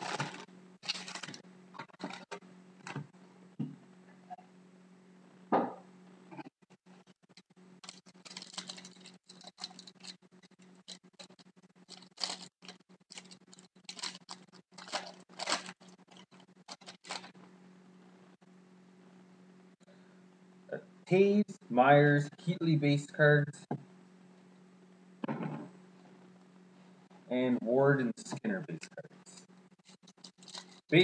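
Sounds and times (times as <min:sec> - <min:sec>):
card packs crinkling and rustling: 0:00.0 - 0:03.0, 0:07.8 - 0:17.4, 0:29.8 - 0:30.9.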